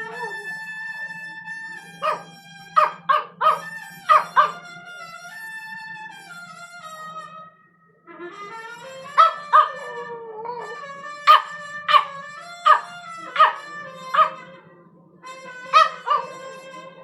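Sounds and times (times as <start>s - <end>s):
dog howling: 0.0s - 0.7s, 2.0s - 4.6s, 9.0s - 14.5s, 15.7s - 16.6s
trumpet playing: 0.0s - 17.0s.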